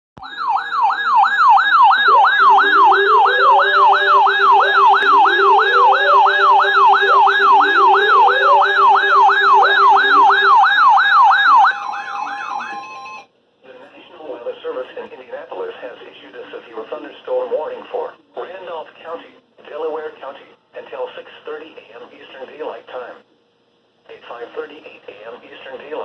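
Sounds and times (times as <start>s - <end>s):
electronic yelp siren: 0.2s - 13.3s
lower steady tone with glides: 2.1s - 11.6s.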